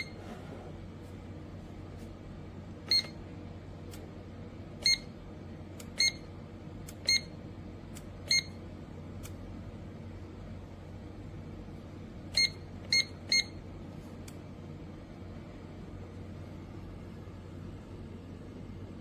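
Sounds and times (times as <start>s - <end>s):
kettle control panel beeps: 0.0s - 0.2s, 2.8s - 3.2s, 4.8s - 5.1s, 5.8s - 6.3s, 6.9s - 7.4s, 8.2s - 8.6s, 12.3s - 13.6s.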